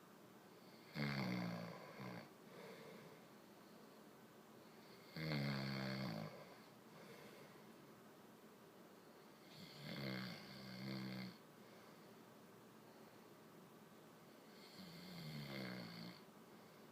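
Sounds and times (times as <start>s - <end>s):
man snoring: 0.6s - 2.8s, 4.9s - 6.7s, 9.4s - 11.4s, 14.5s - 16.3s.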